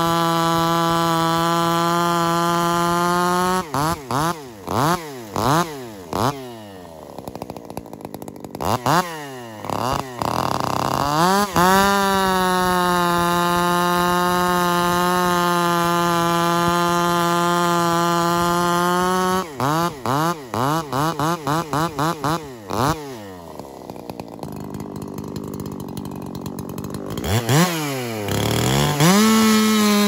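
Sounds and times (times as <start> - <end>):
chainsaw revving: 0.0 - 30.0.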